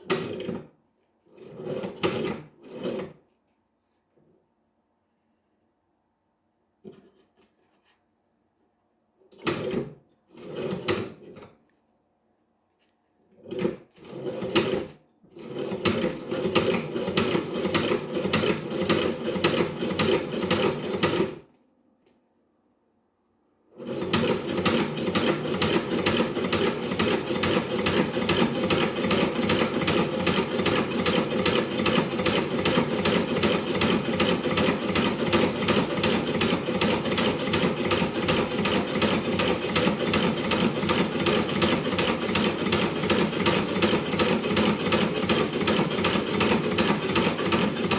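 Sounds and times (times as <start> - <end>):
sewing machine stitching: 0.0 - 3.2, 9.3 - 11.6, 13.3 - 21.5, 23.7 - 47.9.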